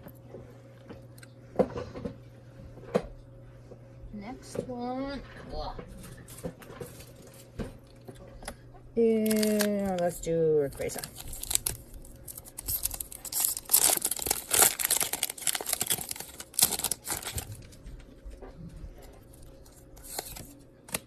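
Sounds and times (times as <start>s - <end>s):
foil wrapper tearing and crinkling: 9.1s - 17.8s, 19.6s - 21.0s.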